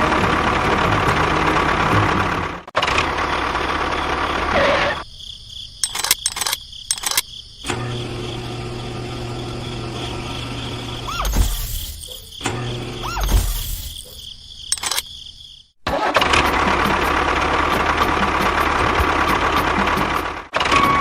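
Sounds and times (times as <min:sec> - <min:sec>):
short sharp bursts: 0:05.8 - 0:07.2, 0:13.1 - 0:15.0
small motors running: 0:05.8 - 0:15.1.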